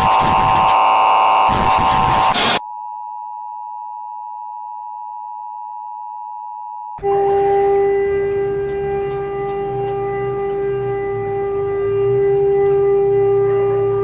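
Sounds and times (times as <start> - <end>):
harsh electronic static with whining: 0.0 - 2.6
steady electronic tone: 0.0 - 2.6.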